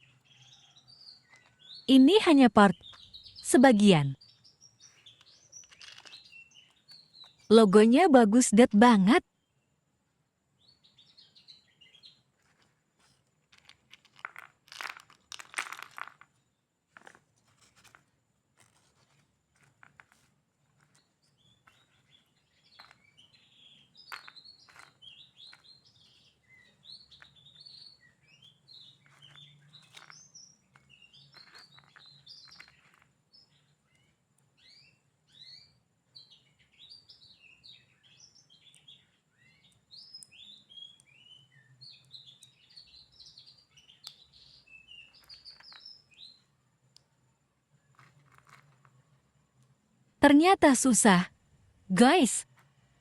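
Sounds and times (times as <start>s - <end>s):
small birds chirping: 0.0s - 9.9s, 10.5s - 49.8s.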